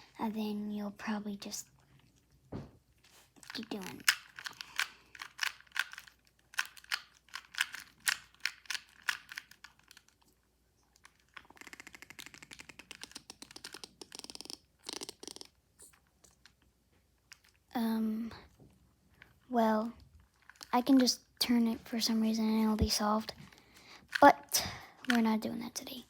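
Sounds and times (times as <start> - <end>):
puzzle cube clicking: 3.4 - 10.2, 11.0 - 16.6.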